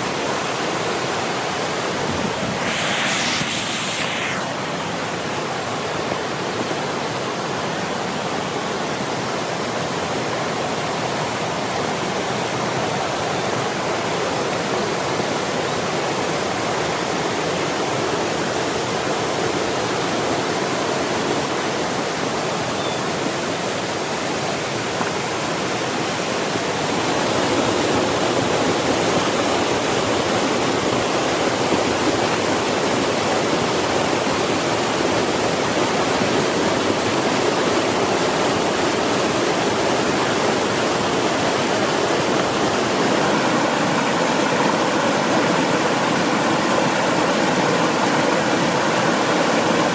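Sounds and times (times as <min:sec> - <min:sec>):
mountain stream rushing: 0:00.9 - 0:05.4, 0:24.4 - 0:49.9.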